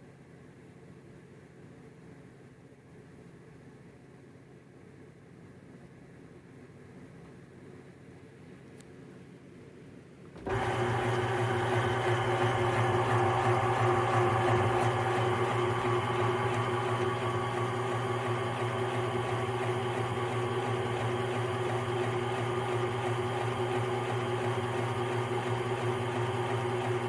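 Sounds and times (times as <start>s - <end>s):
washing machine motor humming: 10.4s - 27.0s.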